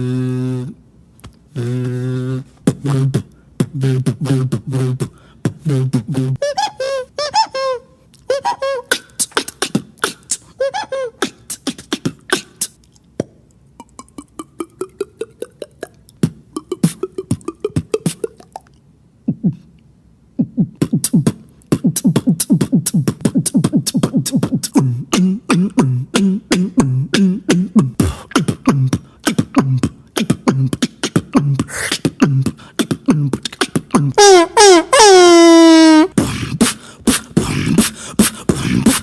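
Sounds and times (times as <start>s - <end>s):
beatboxing: 0.0s - 19.8s, 20.4s - 39.0s
held vocal tone sliding down: 1.6s - 3.2s.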